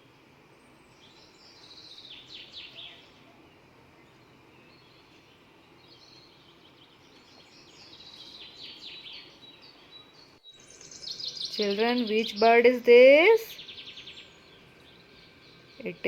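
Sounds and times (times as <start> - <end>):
faint steady hiss: 0.0 - 16.0
small birds chirping: 0.0 - 16.0.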